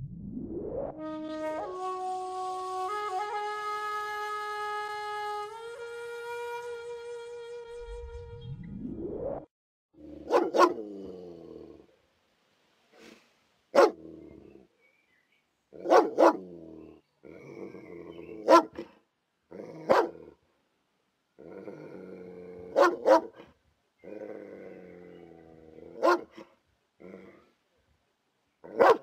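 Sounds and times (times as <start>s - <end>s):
dog growling: 10.0s - 11.9s, 13.9s - 14.7s, 15.8s - 18.5s, 19.5s - 20.4s, 21.4s - 23.1s, 24.0s - 26.2s, 27.0s - 27.5s
dog barking aggressively: 10.2s - 10.9s, 13.7s - 14.0s, 15.8s - 16.5s, 18.4s - 19.0s, 19.8s - 20.3s, 22.7s - 23.5s, 26.0s - 26.5s, 28.7s - 29.0s.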